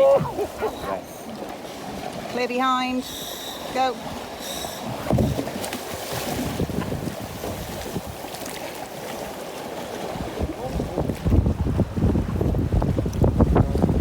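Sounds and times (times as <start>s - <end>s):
water washing and slapping: 0.0s - 14.0s
wind buffeting microphone: 4.8s - 8.3s, 10.1s - 14.0s.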